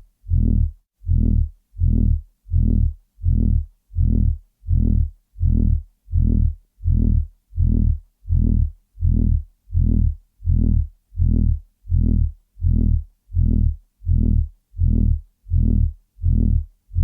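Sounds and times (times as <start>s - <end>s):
deep pulsing hum: 0.0s - 17.0s.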